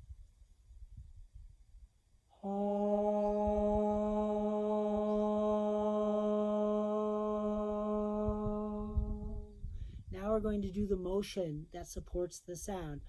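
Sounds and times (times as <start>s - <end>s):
person chanting held haaa: 2.4s - 9.5s.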